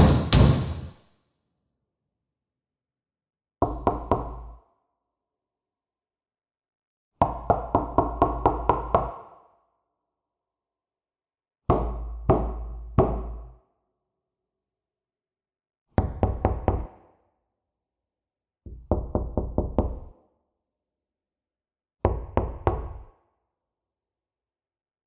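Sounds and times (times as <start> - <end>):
knocking on a door: 0.0 - 1.0, 18.7 - 20.0.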